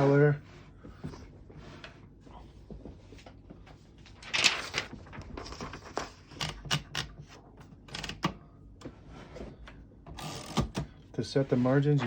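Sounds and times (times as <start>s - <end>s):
manual typewriter clicks and clunks: 6.3s - 7.2s, 7.8s - 8.4s, 10.1s - 10.9s.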